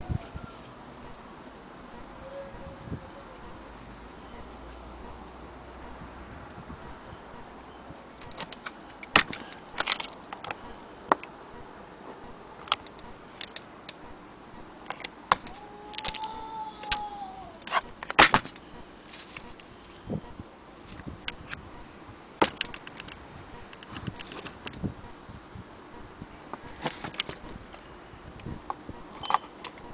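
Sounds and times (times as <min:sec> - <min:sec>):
metallic clicks and knocks: 0:08.2 - 0:11.4, 0:22.4 - 0:24.8.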